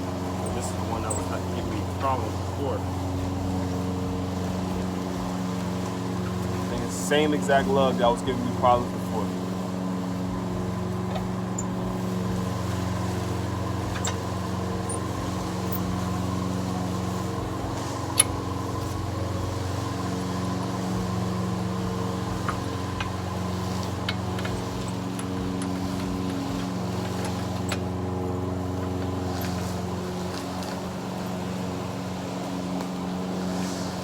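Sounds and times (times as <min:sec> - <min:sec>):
lawn mower engine running: 0:00.0 - 0:34.0.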